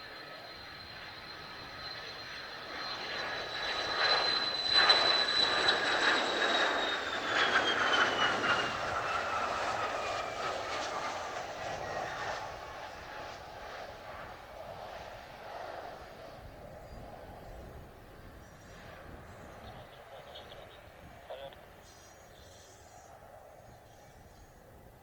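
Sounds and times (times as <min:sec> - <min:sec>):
jet passing with whine: 0:00.0 - 0:24.8.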